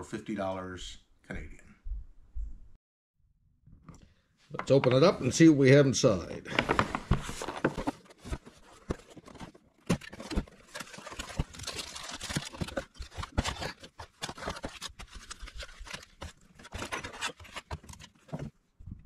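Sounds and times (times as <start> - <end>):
packaging rustling and scraping: 6.5 - 18.6.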